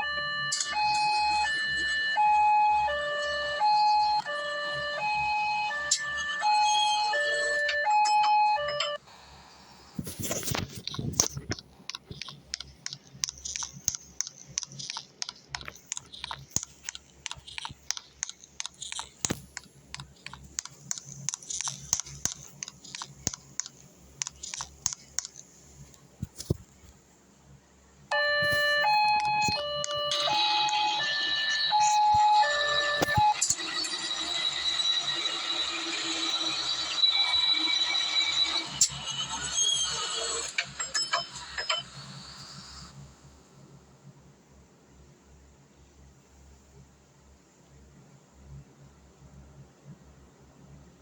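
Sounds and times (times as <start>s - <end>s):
two-tone siren: 0.0s - 9.0s, 28.1s - 40.5s.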